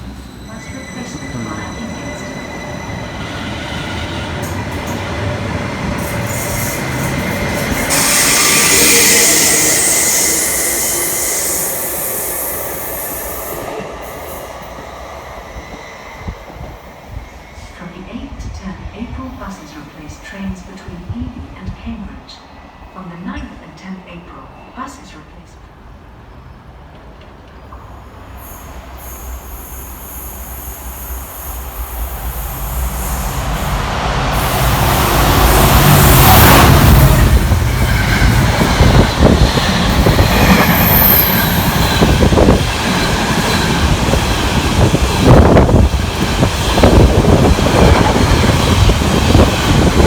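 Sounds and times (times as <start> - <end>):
train running on rails: 0.0 - 50.0
train rumble: 25.6 - 50.0.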